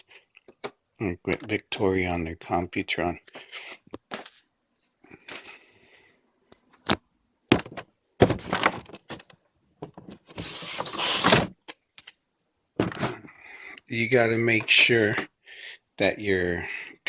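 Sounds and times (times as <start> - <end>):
rustling and scraping: 3.2 - 5.7, 8.3 - 11.5, 12.8 - 13.3, 14.5 - 15.3.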